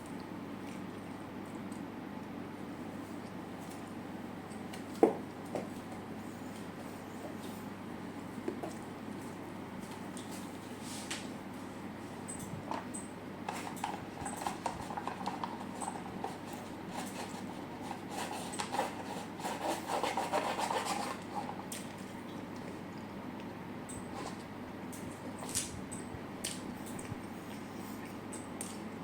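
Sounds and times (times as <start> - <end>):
chewing with wet mouth clicks: 0.0 - 2.4, 26.4 - 29.0.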